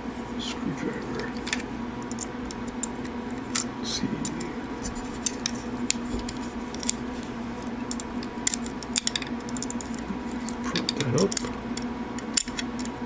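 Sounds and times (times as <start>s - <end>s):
plastic toy parts clicking: 7.9s - 13.0s.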